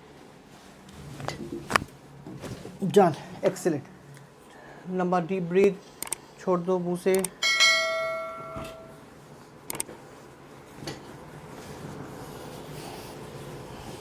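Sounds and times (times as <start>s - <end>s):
low room noise: 0.0s - 14.0s
ringing chime-like tone: 7.4s - 9.0s.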